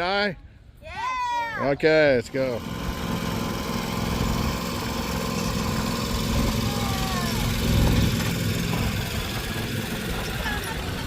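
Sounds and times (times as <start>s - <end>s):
lawn tractor engine running: 2.2s - 11.0s.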